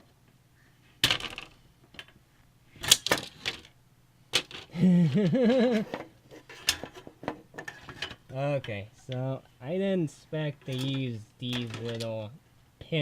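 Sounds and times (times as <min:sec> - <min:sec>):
small metal hardware rattling: 0:10.6 - 0:12.1.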